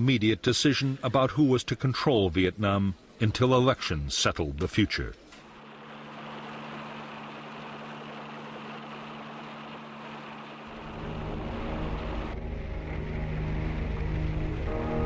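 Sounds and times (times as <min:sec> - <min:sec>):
sustained music tones: 0:05.5 - 0:15.0
deep rumble: 0:10.7 - 0:15.0.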